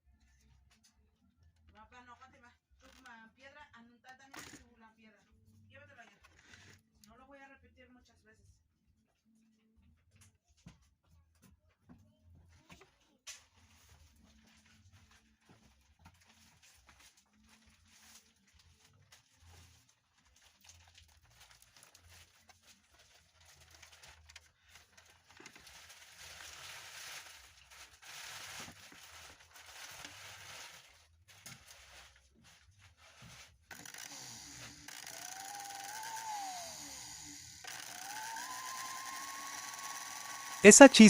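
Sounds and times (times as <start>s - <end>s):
blender motor whining: 33.7s - 40.7s.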